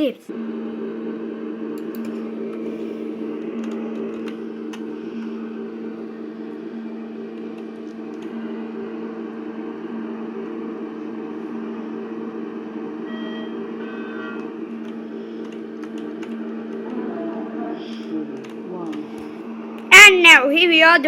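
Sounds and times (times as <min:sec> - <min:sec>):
lift machine hum: 0:00.0 - 0:21.0
electronic beeps: 0:13.0 - 0:14.4.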